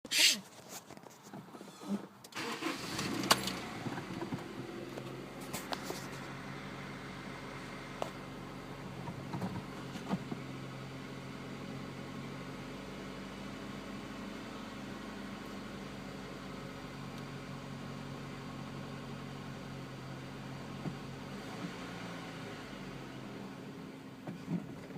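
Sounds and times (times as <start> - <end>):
car engine idling: 1.6 - 21.3.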